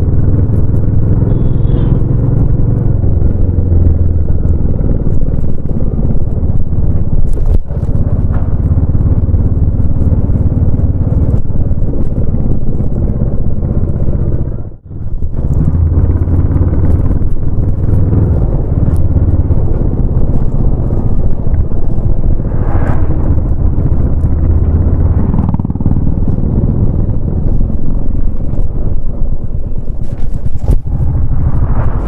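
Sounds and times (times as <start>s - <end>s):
motorcycle engine thumping: 3.0s - 15.9s.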